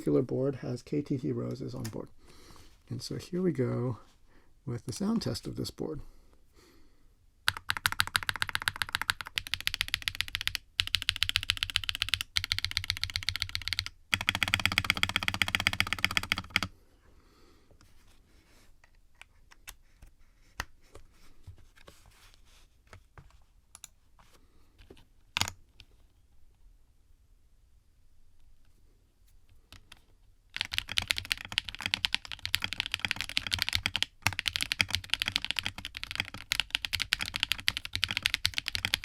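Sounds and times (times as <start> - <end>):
mechanical keyboard typing: 7.5 - 16.7, 29.7 - 39.0.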